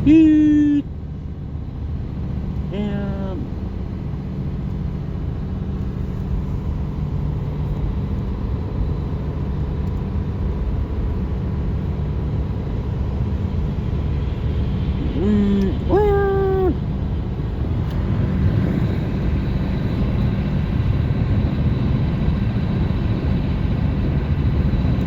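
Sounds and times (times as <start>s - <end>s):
high-pitched voiced call: 0.0s - 0.9s, 2.7s - 3.5s, 15.0s - 16.8s
car road and engine rumble: 0.0s - 25.0s.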